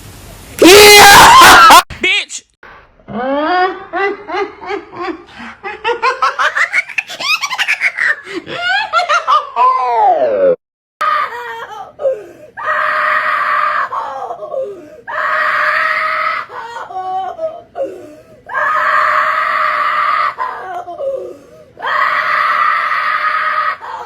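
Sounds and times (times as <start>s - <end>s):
person screaming: 0.6s - 1.9s.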